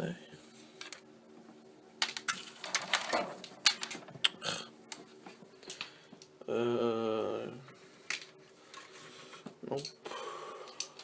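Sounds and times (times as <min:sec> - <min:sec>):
window blinds rattling: 0:02.3 - 0:04.0
man's wordless vocal sound: 0:06.4 - 0:07.7.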